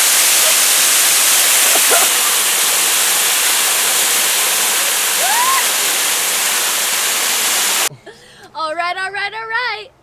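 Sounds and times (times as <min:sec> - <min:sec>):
waterfall roaring: 0:00.0 - 0:07.9.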